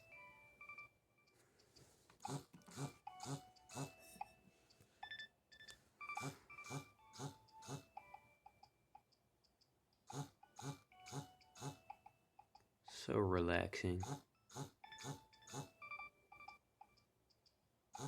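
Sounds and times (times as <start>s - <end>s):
phone ringtone beeps: 0.0s - 1.4s, 2.8s - 8.6s, 14.4s - 17.0s
phone vibration buzzing: 6.0s - 7.9s.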